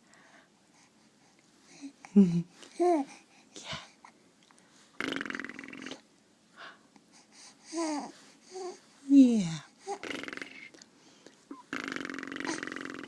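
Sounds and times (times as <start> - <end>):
child snorting: 9.8 - 10.7, 11.5 - 13.0.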